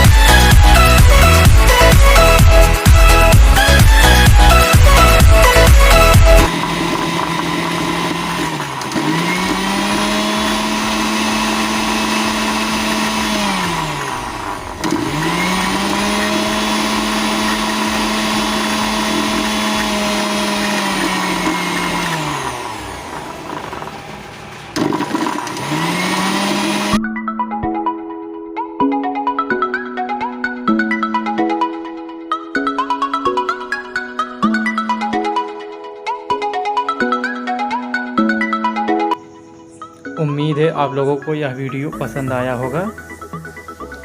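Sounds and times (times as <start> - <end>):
mixer grinder motor whining: 0.0 - 27.0.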